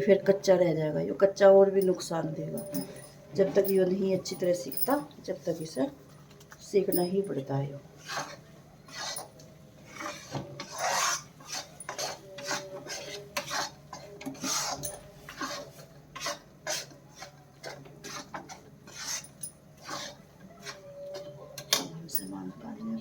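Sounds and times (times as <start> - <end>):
utensil scraping a pan: 8.0 - 21.3.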